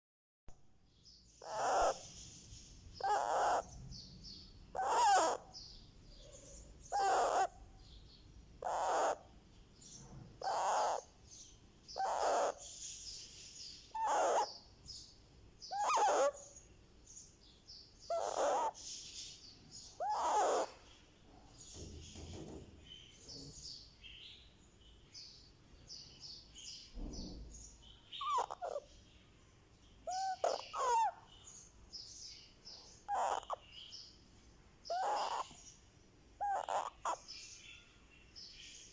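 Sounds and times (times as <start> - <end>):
parrot calling loudly: 1.4 - 2.0, 3.0 - 3.7, 4.7 - 5.6, 6.9 - 7.6, 8.6 - 9.3, 10.4 - 11.1, 12.0 - 12.6, 13.9 - 14.6, 15.7 - 16.4, 18.1 - 18.8, 20.0 - 20.8, 28.2 - 28.9, 30.1 - 31.2, 33.1 - 33.6, 34.9 - 35.6, 36.4 - 37.2
parrot soft chatter: 3.0 - 3.7, 4.8 - 5.4, 6.9 - 7.5, 10.4 - 11.0, 12.0 - 12.7, 14.0 - 14.5, 15.7 - 16.4, 18.1 - 18.8, 20.0 - 20.8, 28.2 - 28.9, 30.1 - 31.2, 33.1 - 33.6, 34.9 - 35.6, 36.4 - 37.2.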